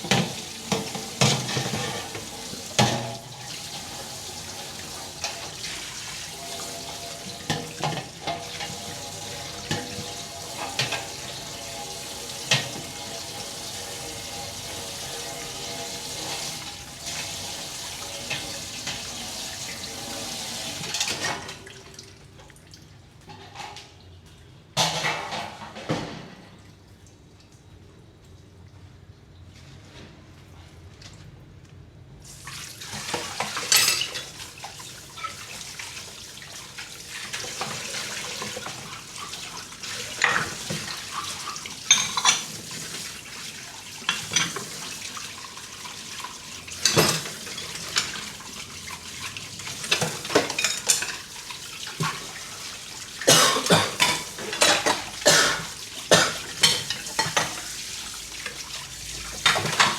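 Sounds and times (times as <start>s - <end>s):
dishes knocking and clinking: 53.6s - 55.1s.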